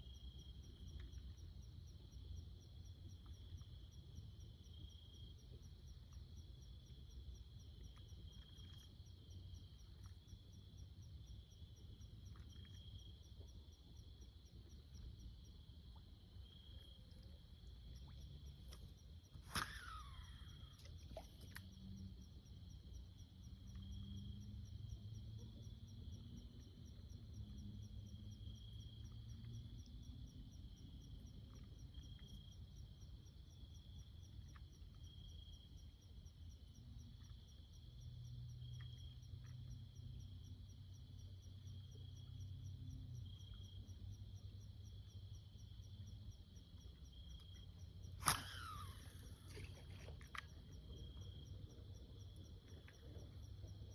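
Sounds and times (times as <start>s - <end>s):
insects trilling: 15.4s - 29.9s, 44.8s - 53.9s.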